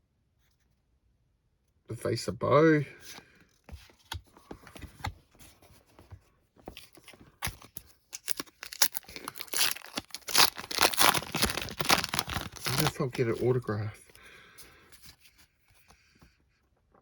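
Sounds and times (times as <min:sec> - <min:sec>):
cards clicking and rustling: 0:03.1 - 0:13.8
wrapper tearing and crinkling: 0:06.9 - 0:13.6.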